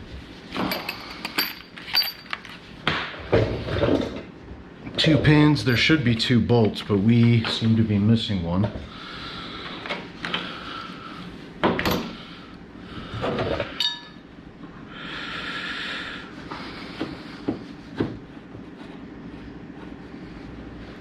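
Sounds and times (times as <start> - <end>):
metal tools knocking and clinking: 0.6 - 2.5, 13.8 - 14.2.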